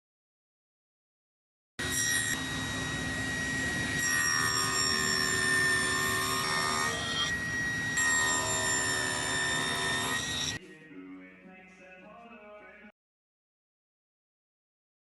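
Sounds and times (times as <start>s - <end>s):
power tool whining on wood: 1.8s - 10.6s.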